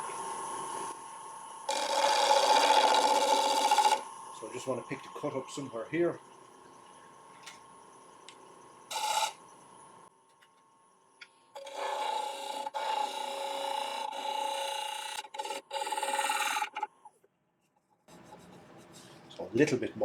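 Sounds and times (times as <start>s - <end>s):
gouge scraping wood on lathe: 1.7s - 4.0s, 8.9s - 9.4s, 11.6s - 16.9s, 18.1s - 19.2s.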